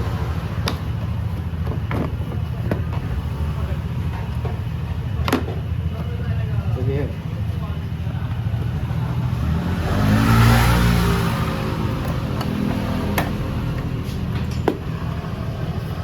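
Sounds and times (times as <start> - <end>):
scooter engine idling and revving: 0.0 - 16.0.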